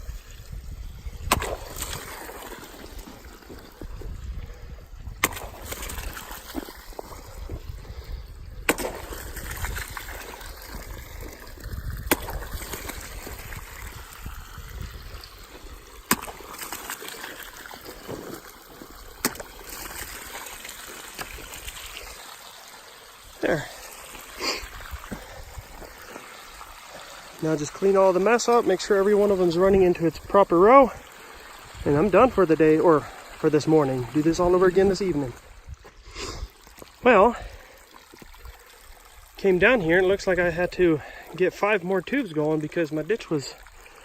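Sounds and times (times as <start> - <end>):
water trickling and splashing: 0.0 - 44.0.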